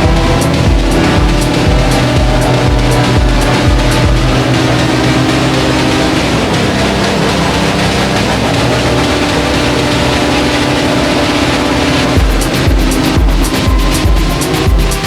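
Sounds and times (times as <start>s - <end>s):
kick drum: 0.0s - 4.8s, 12.2s - 15.0s
sustained synth chords: 0.0s - 15.0s.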